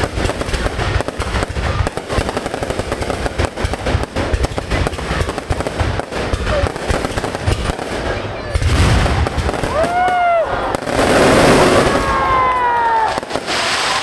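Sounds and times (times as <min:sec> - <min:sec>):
fireworks crackling: 0:00.0 - 0:14.0
deep rumbling booms: 0:03.8 - 0:12.7.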